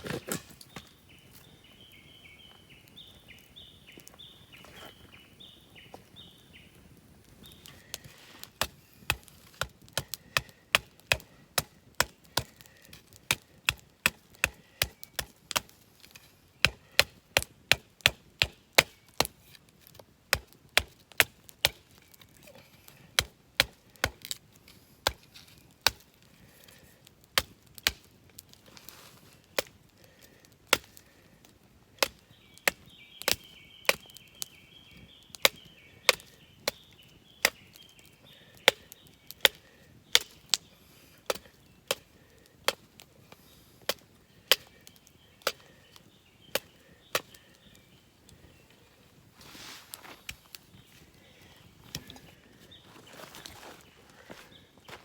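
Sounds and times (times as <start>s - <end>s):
wood being chopped: 0.0s - 0.9s, 7.7s - 19.4s, 20.3s - 22.2s, 23.2s - 24.4s, 25.0s - 26.0s, 27.4s - 28.1s, 30.7s - 31.0s, 32.0s - 34.2s, 38.6s - 40.6s, 41.3s - 42.0s, 42.7s - 42.9s.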